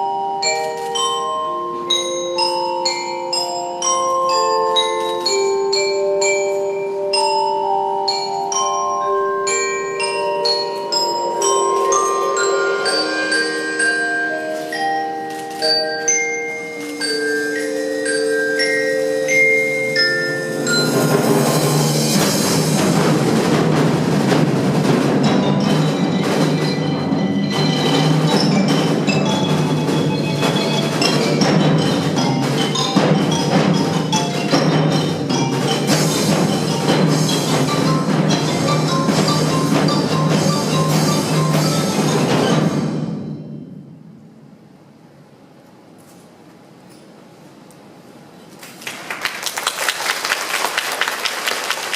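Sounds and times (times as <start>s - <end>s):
mallet percussion melody: 0.0s - 44.5s
cymbal crash and percussion: 8.1s - 45.0s.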